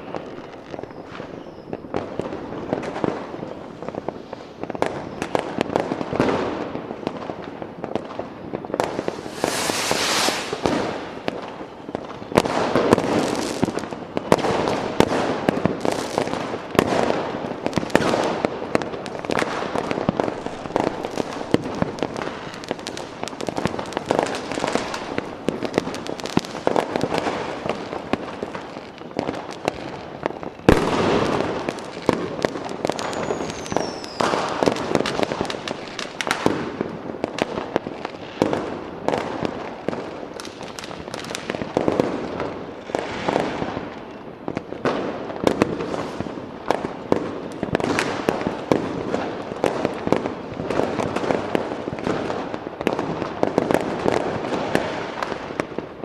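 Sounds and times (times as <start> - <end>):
fireworks bangs and crackling: 0.0 - 56.0
falling whistle: 9.2 - 10.7, 33.2 - 34.2.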